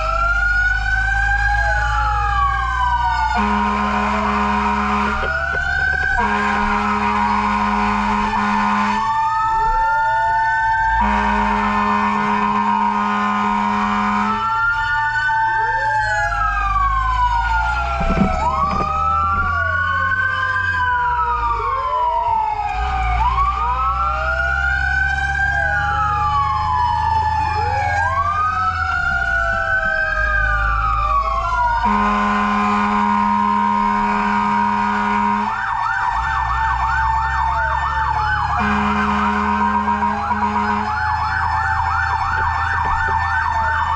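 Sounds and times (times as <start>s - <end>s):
engine rumble: 0.0s - 43.9s
fast siren yelp: 0.0s - 43.9s
fire truck sirens wailing: 0.0s - 43.9s
long horn blasts: 3.2s - 9.1s, 11.0s - 14.6s, 31.8s - 35.6s, 38.6s - 41.2s.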